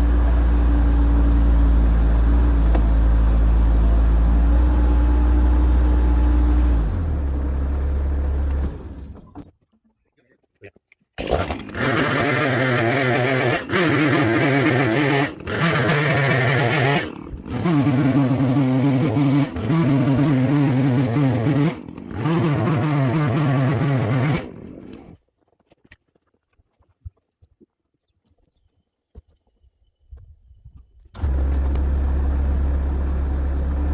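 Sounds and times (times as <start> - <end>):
diesel engine revving high: 0.0 - 9.2, 11.2 - 25.2, 31.2 - 33.9.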